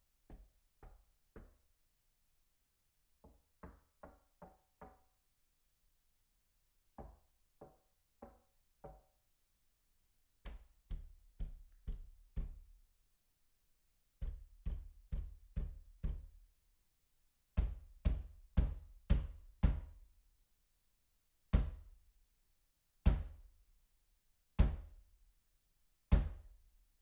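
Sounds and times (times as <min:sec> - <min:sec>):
knocking on a door: 0:10.5 - 0:12.7, 0:14.2 - 0:16.4, 0:17.6 - 0:20.0, 0:21.5 - 0:21.8, 0:23.1 - 0:23.3, 0:24.6 - 0:24.9.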